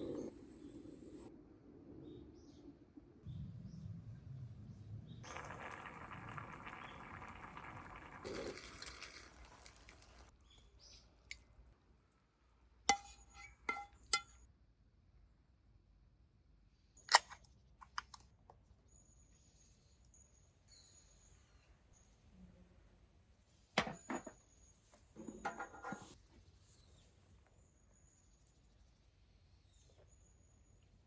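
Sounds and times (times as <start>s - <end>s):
liquid pouring: 5.2s - 10.4s.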